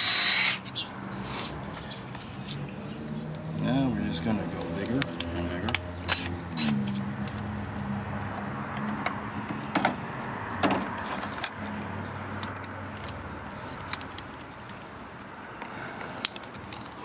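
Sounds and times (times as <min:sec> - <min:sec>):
electric drill boring into metal: 0:00.0 - 0:00.7, 0:06.1 - 0:06.8.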